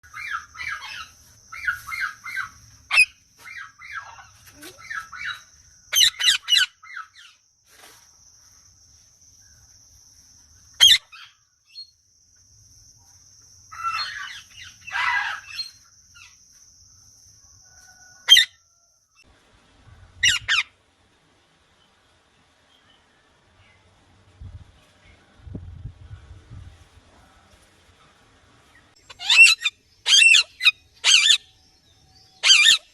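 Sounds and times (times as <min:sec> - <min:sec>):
parrots calling: 0:00.1 - 0:07.4, 0:10.8 - 0:11.4, 0:13.7 - 0:15.8, 0:20.2 - 0:20.7, 0:29.0 - 0:31.5, 0:32.4 - 0:32.9.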